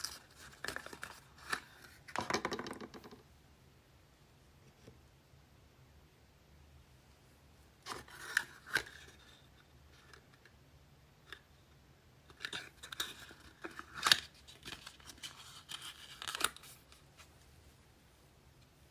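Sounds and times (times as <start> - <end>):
wrapping paper rustling and tearing: 13.2 - 17.3.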